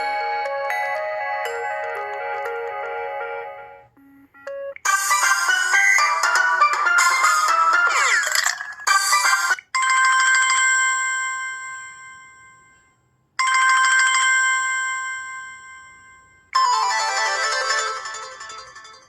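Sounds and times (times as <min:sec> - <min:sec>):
musical phone ringtone: 0:00.0 - 0:12.6, 0:16.6 - 0:19.0
telephone bell ringtone trill: 0:16.6 - 0:19.0.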